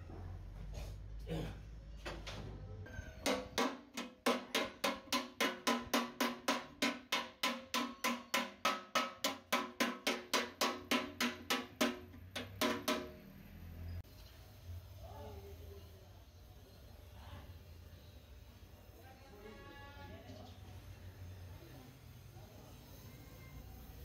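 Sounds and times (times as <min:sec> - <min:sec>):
hammer striking metal: 0:02.8 - 0:13.4.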